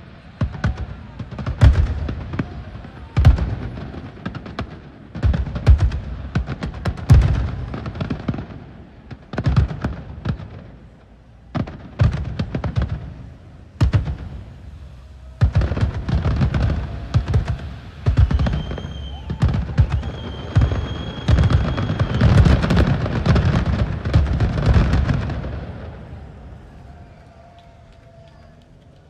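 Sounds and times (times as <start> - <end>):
fireworks bangs: 0.0 - 29.0
fireworks crackling: 0.0 - 29.0
high steady whistle: 16.6 - 22.8.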